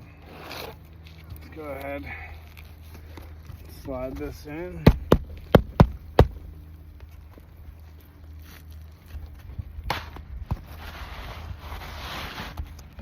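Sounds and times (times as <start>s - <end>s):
knocks and taps on shingle roof: 4.8s - 6.4s.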